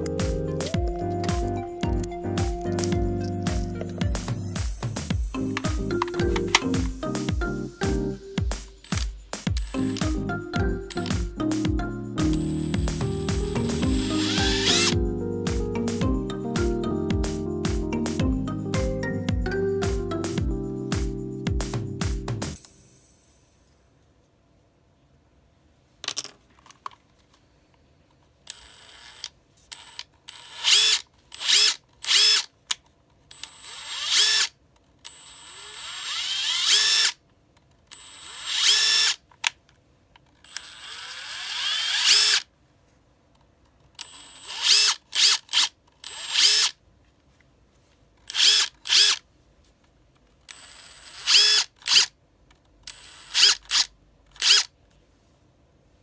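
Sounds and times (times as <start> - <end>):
impact driver motor whine: 12.3 - 15.0.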